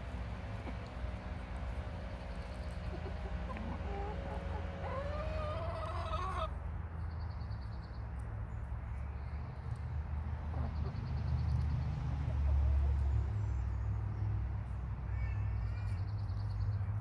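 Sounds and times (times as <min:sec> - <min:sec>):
hens clucking: 0:00.1 - 0:06.6.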